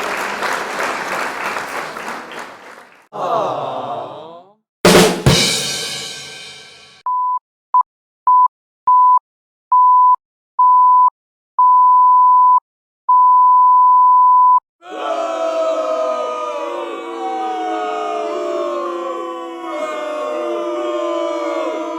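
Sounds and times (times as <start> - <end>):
crowd booing: 0.0 - 6.6, 14.8 - 21.9.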